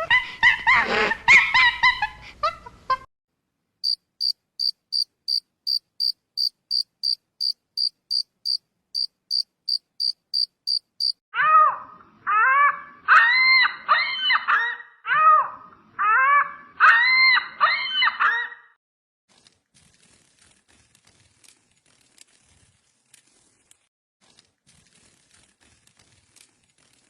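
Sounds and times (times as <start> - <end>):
cricket chirping: 3.8 - 11.2.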